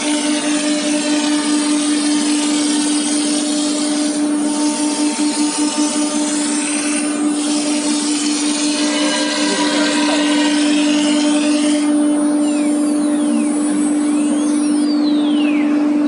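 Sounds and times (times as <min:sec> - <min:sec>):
router spindle cutting wood: 0:00.0 - 0:14.9.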